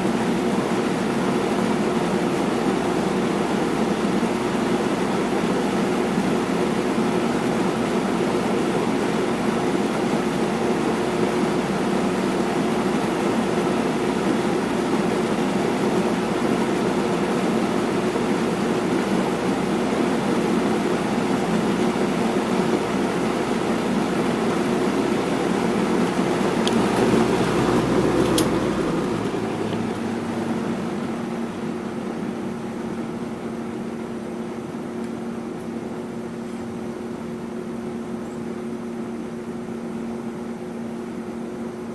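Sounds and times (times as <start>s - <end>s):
box fan running: 0.0s - 41.9s
fan switch click: 26.6s - 27.3s, 27.9s - 30.1s.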